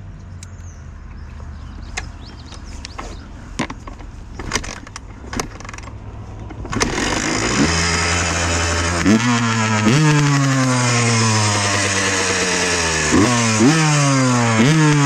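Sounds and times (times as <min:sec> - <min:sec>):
dirt bike engine idling and revving: 0:00.3 - 0:15.0
sharp clicks and knocks: 0:01.9 - 0:07.7.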